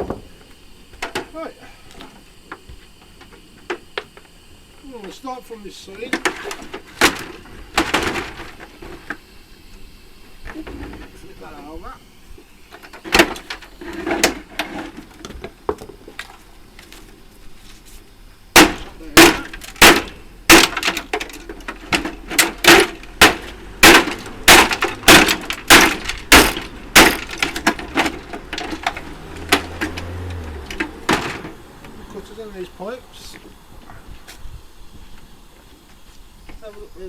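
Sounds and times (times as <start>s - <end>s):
sharp loud knocks on metal unit: 18.6s - 21.1s, 21.9s - 28.9s.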